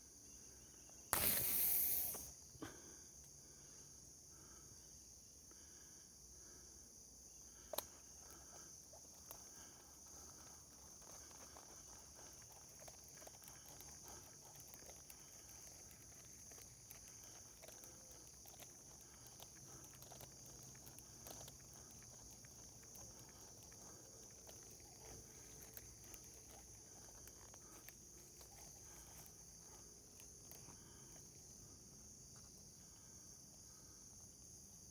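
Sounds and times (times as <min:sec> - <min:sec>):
insect chorus: 0:00.0 - 0:34.9
small clicks and rustles: 0:07.5 - 0:33.1.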